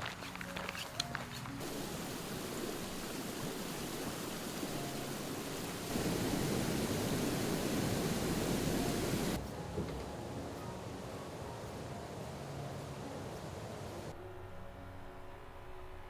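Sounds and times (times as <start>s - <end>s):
flowing water rushing: 1.6s - 9.4s.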